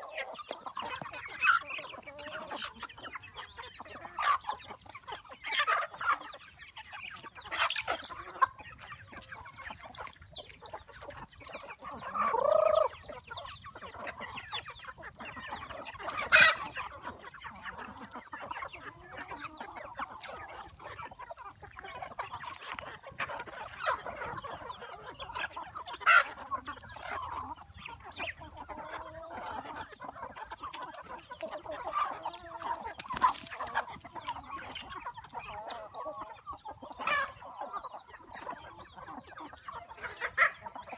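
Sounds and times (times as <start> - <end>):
chickens clucking: 0.0 - 40.9
chicken long call: 12.0 - 13.2.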